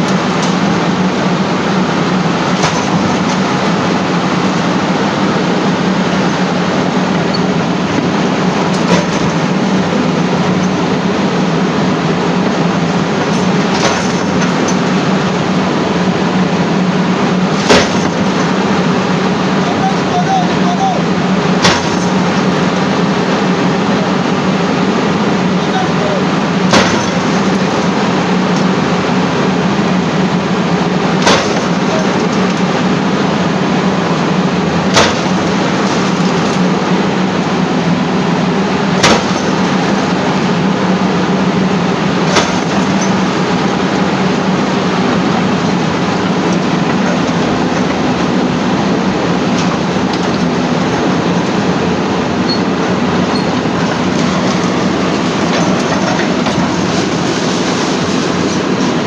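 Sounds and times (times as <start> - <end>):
demolition machinery running: 0.0 - 59.0
sharp knocks: 2.4 - 4.0, 6.2 - 16.3, 17.4 - 23.1, 25.6 - 29.0, 31.0 - 37.0, 38.7 - 40.6, 42.1 - 51.8.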